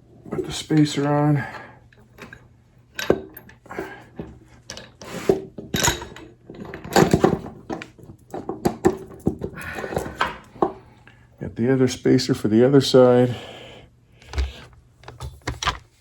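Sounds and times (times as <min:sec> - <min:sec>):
metal parts clinking and scraping: 0:02.0 - 0:10.6.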